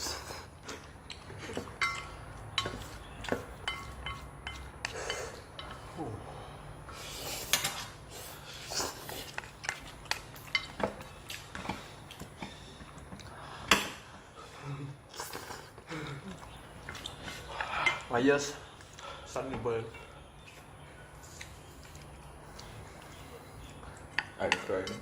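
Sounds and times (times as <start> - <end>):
utensils clinking against bowls: 1.4 - 6.0, 9.2 - 12.6, 16.4 - 18.6, 24.0 - 25.0.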